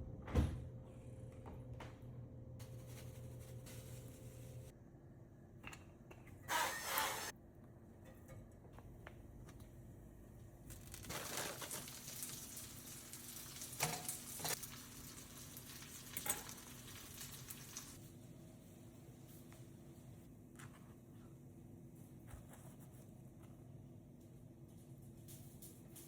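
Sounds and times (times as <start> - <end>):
food sizzling in a pan: 10.8 - 18.0.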